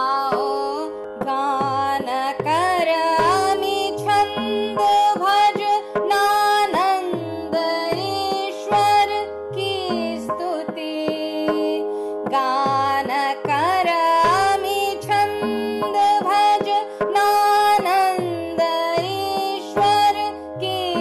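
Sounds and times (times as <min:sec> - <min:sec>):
bending melody: 0:02.6 - 0:11.8.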